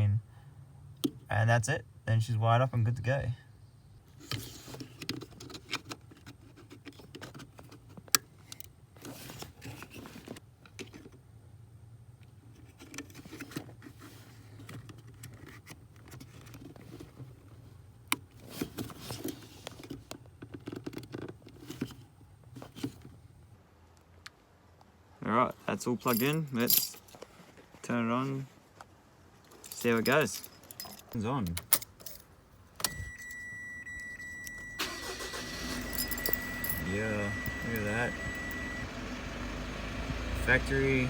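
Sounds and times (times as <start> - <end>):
hands rustling among wiring: 29.4 - 32.2.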